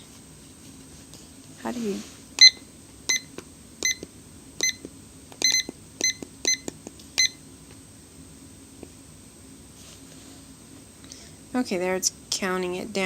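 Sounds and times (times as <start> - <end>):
kitchen timer beeps: 2.4 - 4.0, 4.6 - 7.4.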